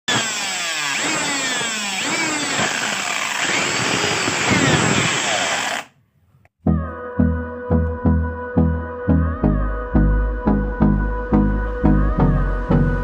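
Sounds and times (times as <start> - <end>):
electric hand drill whining: 0.1 - 5.9.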